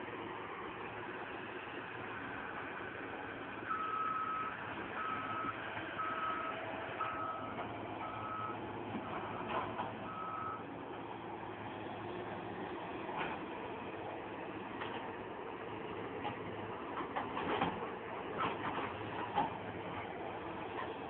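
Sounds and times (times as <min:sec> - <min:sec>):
diesel engine running: 0:00.0 - 0:21.0
back-up alarm beeping: 0:03.7 - 0:09.5, 0:10.1 - 0:10.6.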